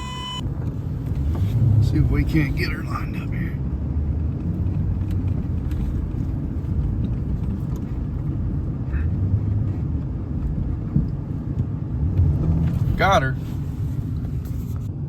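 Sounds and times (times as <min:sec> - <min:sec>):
truck engine rumbling: 0:00.0 - 0:15.0.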